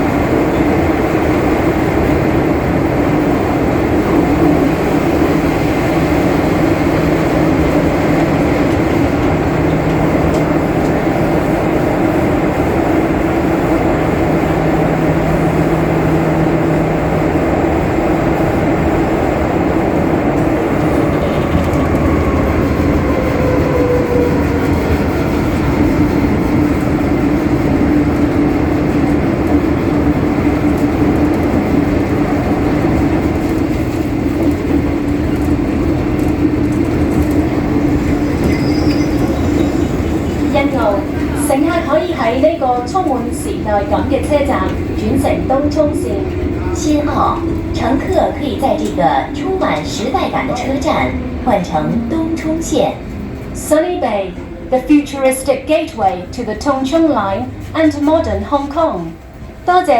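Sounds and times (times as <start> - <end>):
train rumble: 0.0 - 59.9
faint descending tone: 38.2 - 39.9.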